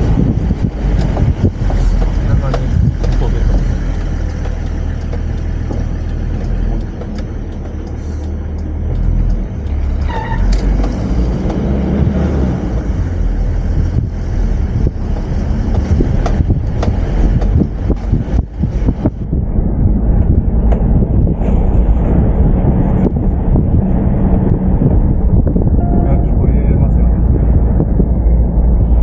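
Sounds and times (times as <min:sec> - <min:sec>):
diesel engine and road rumble: 0:00.0 - 0:29.0
wind buffeting: 0:00.0 - 0:29.0
brief high chirp: 0:25.8 - 0:26.5.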